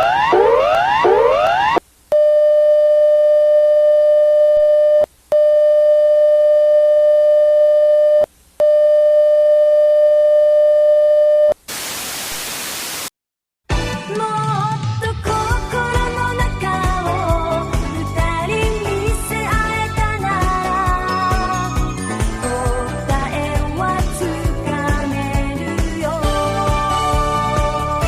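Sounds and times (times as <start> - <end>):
burst of static: 11.6 - 13.1.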